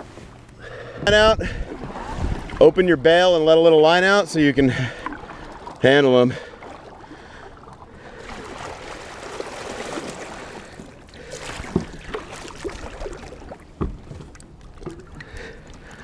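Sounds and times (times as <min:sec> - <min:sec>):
water splashing and sloshing: 0:00.0 - 0:16.0
sharp knocks against boat: 0:11.5 - 0:12.4, 0:13.7 - 0:15.1.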